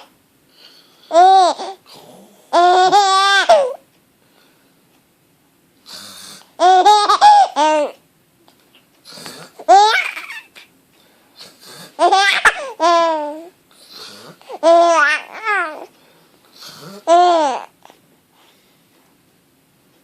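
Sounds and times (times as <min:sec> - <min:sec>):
baby giggling: 0:01.1 - 0:01.8, 0:02.5 - 0:03.8, 0:06.6 - 0:08.0, 0:09.1 - 0:10.7, 0:11.9 - 0:13.5, 0:14.4 - 0:15.9, 0:16.8 - 0:17.7
breathy noise: 0:09.0 - 0:10.0, 0:10.6 - 0:19.0.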